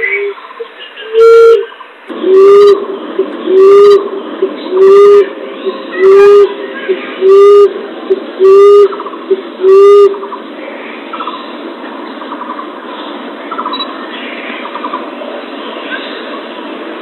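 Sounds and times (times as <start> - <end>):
dove cooing: 1.1 - 10.4.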